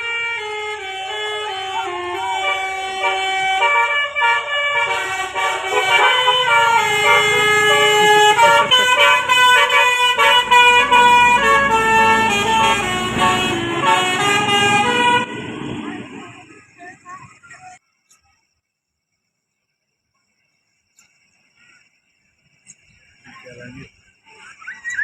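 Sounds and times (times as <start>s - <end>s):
musical air horn on a bus: 0.0s - 16.1s
vehicle noise: 0.0s - 17.8s.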